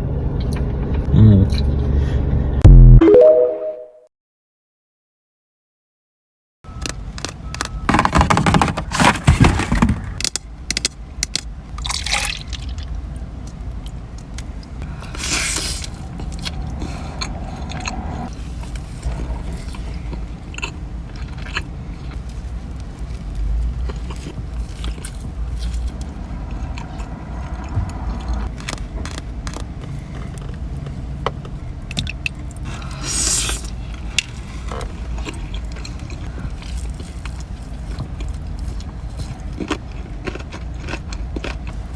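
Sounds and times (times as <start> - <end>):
biting and chewing: 13.4 - 41.9
low rumble: 22.0 - 29.2.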